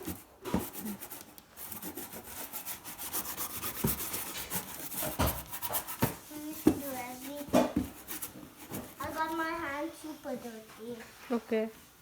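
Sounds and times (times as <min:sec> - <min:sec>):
paintbrush scrubbing: 0:00.0 - 0:10.0.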